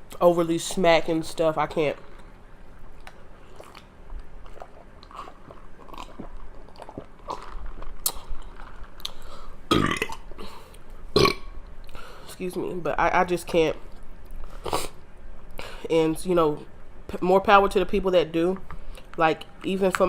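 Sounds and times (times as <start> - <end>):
person chewing food: 2.0 - 12.0
person burping loudly: 9.7 - 10.3, 11.2 - 11.5.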